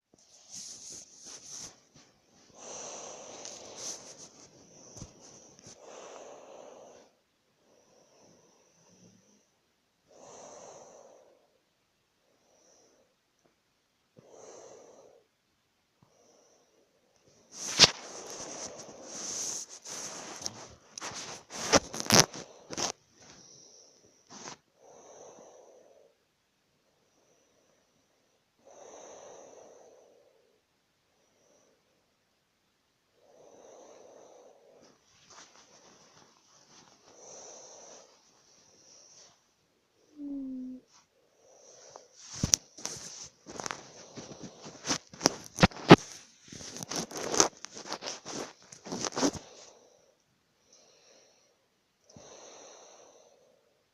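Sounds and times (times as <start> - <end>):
person snoring: 40.1 - 46.0.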